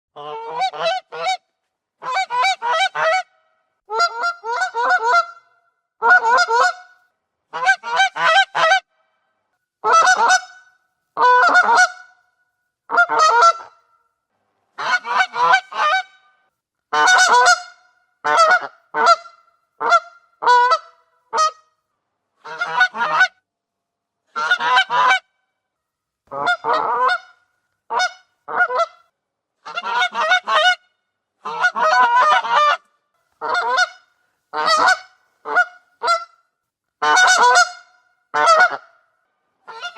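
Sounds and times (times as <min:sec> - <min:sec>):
goose honking: 0:00.2 - 0:01.4, 0:02.0 - 0:06.9, 0:07.5 - 0:08.8, 0:09.8 - 0:12.2, 0:12.9 - 0:13.8, 0:14.8 - 0:16.3, 0:16.9 - 0:21.6, 0:22.4 - 0:23.3, 0:24.3 - 0:25.2, 0:26.3 - 0:29.0, 0:29.6 - 0:30.8, 0:31.4 - 0:32.8, 0:33.4 - 0:36.3, 0:37.0 - 0:39.0, 0:39.7 - 0:39.9.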